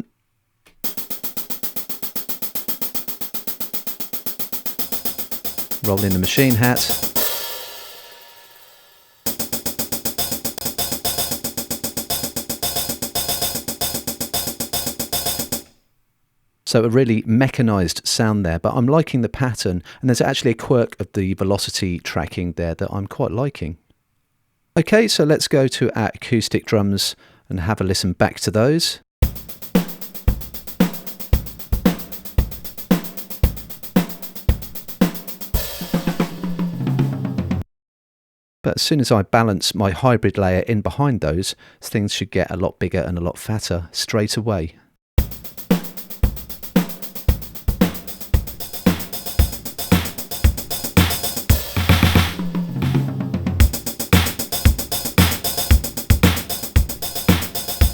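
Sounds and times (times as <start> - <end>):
cymbal crash: 0.8 - 15.7, 29.3 - 37.1, 45.2 - 57.9
drum machine hi-hat pattern: 0.8 - 15.8, 29.2 - 37.6, 45.2 - 57.9
cymbal ringing: 0.9 - 15.7.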